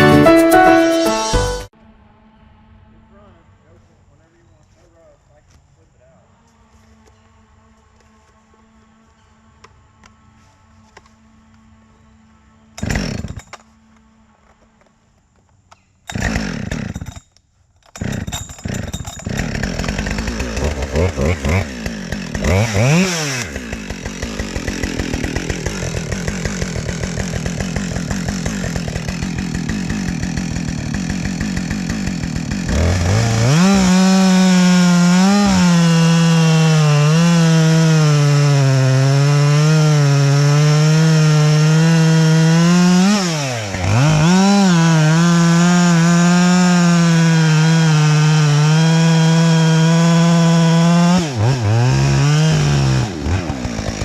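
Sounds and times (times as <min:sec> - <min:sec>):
chainsaw cutting wood: 0:12.8 - 0:14.0, 0:15.8 - 0:54.0.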